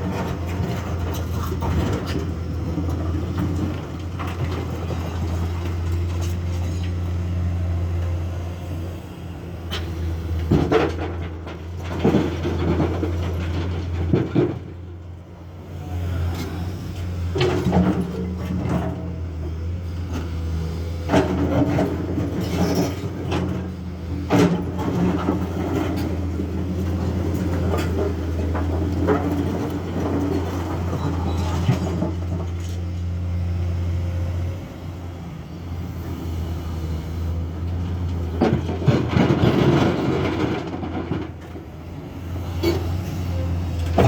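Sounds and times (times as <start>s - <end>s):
excavator diesel engine running: 0.0s - 44.0s.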